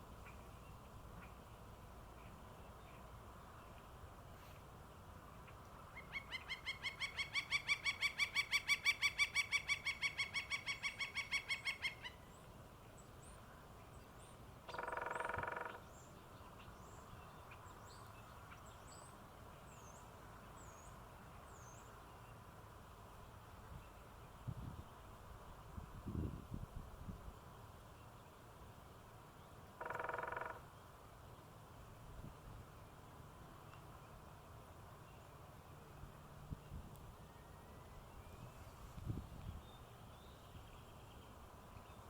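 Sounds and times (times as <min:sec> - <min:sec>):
woodpecker long call: 0:05.9 - 0:12.2, 0:14.7 - 0:16.1, 0:29.7 - 0:30.8.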